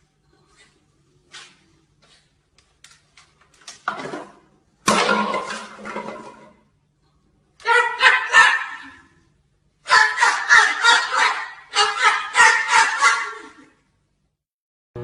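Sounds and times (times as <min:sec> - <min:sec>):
objects crashing and clattering: 0:03.8 - 0:06.7.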